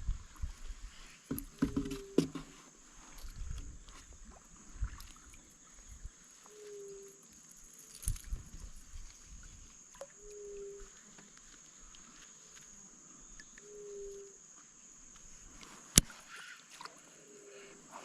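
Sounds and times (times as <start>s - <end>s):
insect chorus: 0.0s - 18.0s
low hooting animal call: 10.2s - 10.9s, 13.6s - 14.3s.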